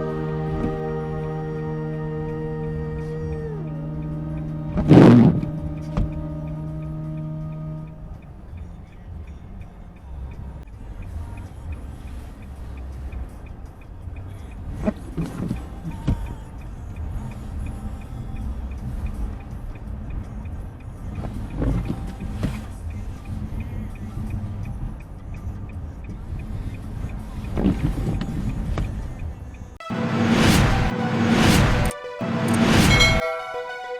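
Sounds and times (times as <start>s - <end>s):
car driving rumble: 0.0s - 8.4s.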